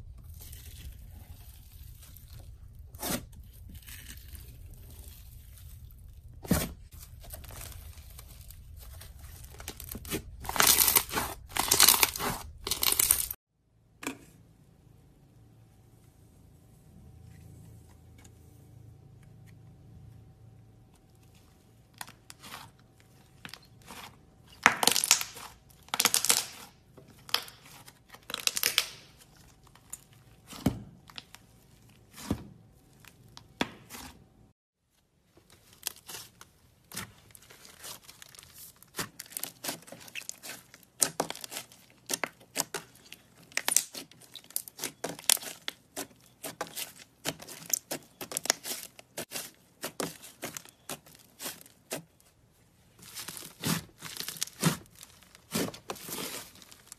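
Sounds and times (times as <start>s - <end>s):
slime crackling and popping: 7.2s - 13.4s, 24.6s - 26.7s, 28.2s - 30.0s, 37.6s - 51.8s.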